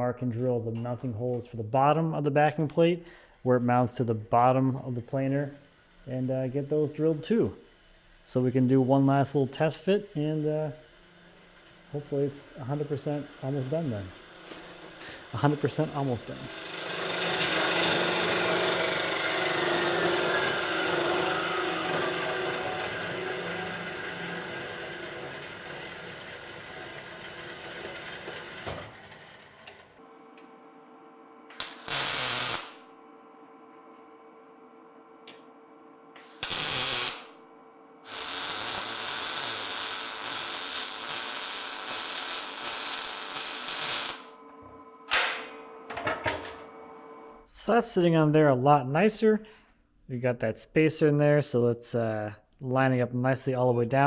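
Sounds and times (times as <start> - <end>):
machine winding down whine: 4.8 - 30.0
loud power tool noise: 9.3 - 30.1, 31.5 - 32.9, 36.1 - 37.4, 38.0 - 44.4.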